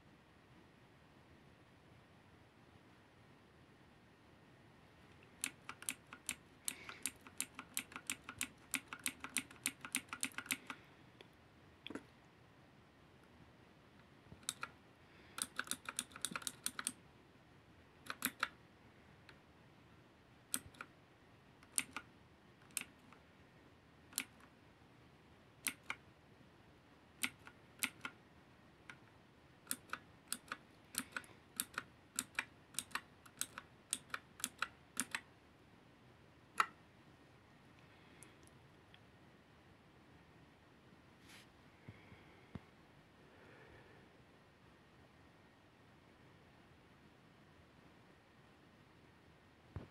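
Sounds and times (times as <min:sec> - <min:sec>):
mechanical keyboard key clicks: 0:05.4 - 0:10.8, 0:14.4 - 0:14.7, 0:15.4 - 0:17.0, 0:18.0 - 0:18.6, 0:20.5 - 0:20.9, 0:21.6 - 0:23.2, 0:24.1 - 0:24.5, 0:25.6 - 0:26.0, 0:27.2 - 0:28.2, 0:29.7 - 0:35.2.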